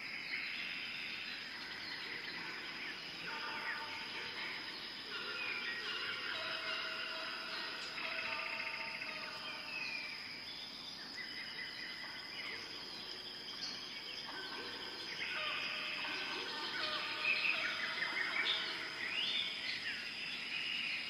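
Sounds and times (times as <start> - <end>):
bird calls and chirps: 0.0 - 21.0
high-pitched insect drone: 1.4 - 10.4, 13.6 - 20.6.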